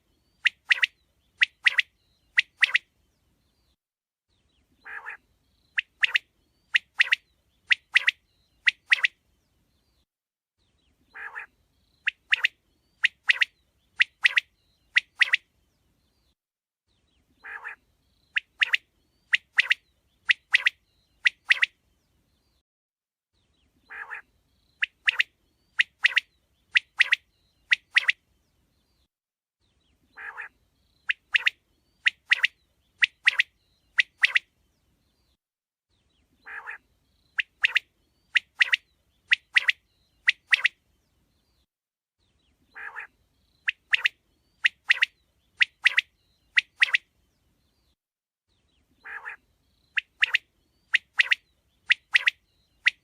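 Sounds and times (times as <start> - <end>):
quail calling: 4.8 - 5.2, 11.1 - 11.5, 17.4 - 17.8, 23.9 - 26.2, 30.1 - 34.4, 36.4 - 36.8, 42.7 - 47.0, 49.0 - 49.4.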